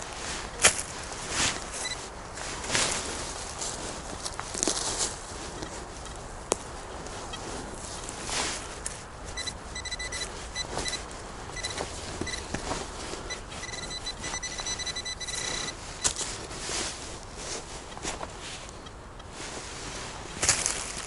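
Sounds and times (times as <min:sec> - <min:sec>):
rustling of leaves and ground: 0:00.0 - 0:21.0
metal detector beeping: 0:01.7 - 0:02.1, 0:09.3 - 0:16.4.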